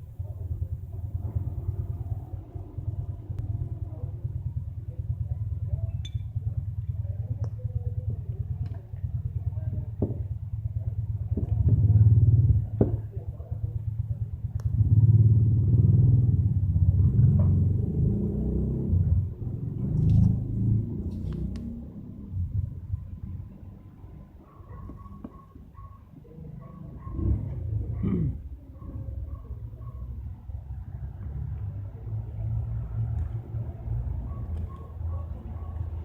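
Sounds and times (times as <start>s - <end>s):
motorcycle engine idling and revving: 0.0s - 36.0s.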